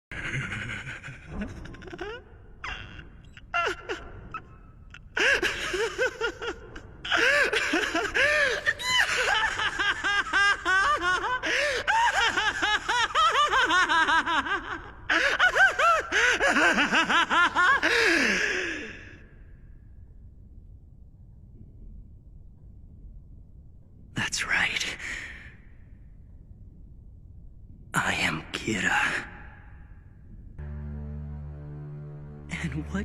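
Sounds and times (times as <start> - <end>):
man laughing maniacally: 0.2 - 4.3, 5.2 - 18.6.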